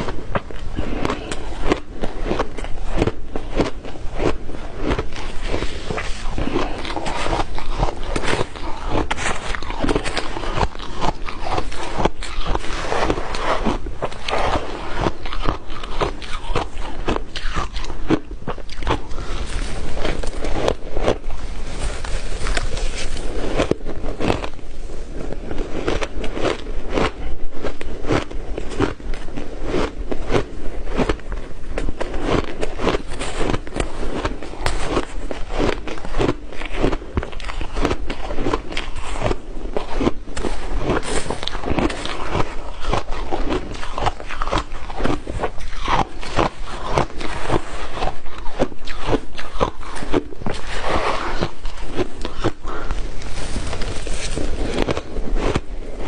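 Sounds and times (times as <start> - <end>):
ice crunched between teeth: 0.0 - 56.0.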